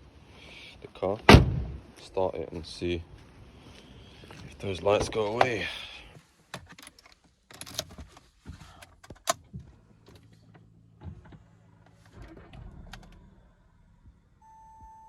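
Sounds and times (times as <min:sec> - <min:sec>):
car key turning: 0:06.6 - 0:08.0
dashboard warning beep: 0:14.4 - 0:15.0.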